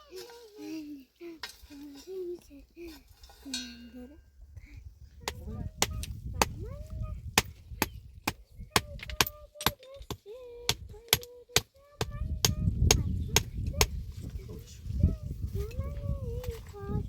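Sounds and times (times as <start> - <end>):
tools striking wood: 7.4 - 13.5.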